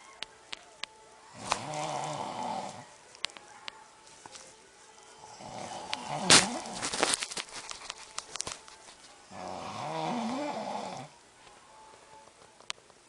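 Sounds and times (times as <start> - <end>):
crackling clicks: 0.1 - 2.1, 3.1 - 5.1, 5.8 - 9.2, 11.4 - 13.0
loud snort: 1.4 - 2.8, 9.3 - 11.1
man snoring: 1.4 - 2.9, 5.3 - 6.8, 9.3 - 11.2.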